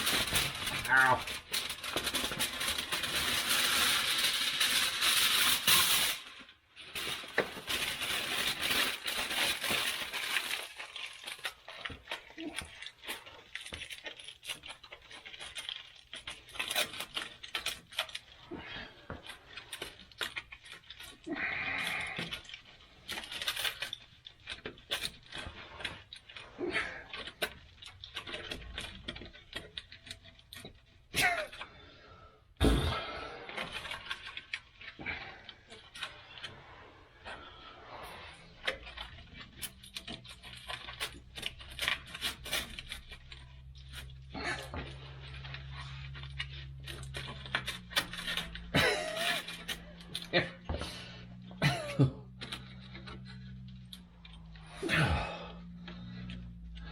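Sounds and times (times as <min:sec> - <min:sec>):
aluminum foil crumpling: 0:00.0 - 0:32.3, 0:33.0 - 0:56.9.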